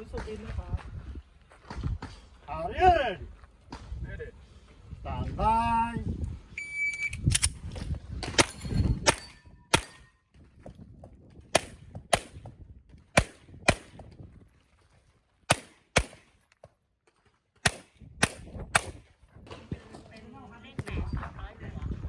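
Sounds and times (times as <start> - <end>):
handgun shots: 8.3 - 10.0, 13.2 - 14.0, 15.5 - 16.3, 17.6 - 19.0.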